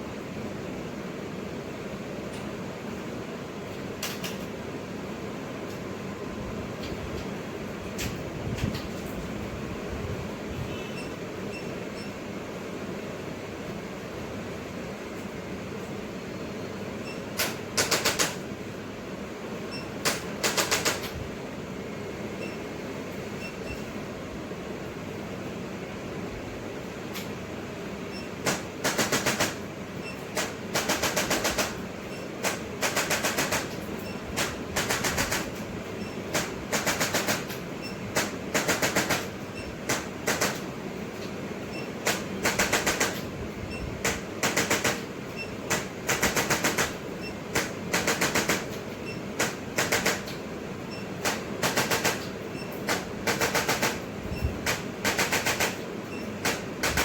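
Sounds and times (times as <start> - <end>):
rapid mechanical tapping: 17.3 - 18.5, 19.7 - 21.2, 28.2 - 43.4, 44.0 - 57.0.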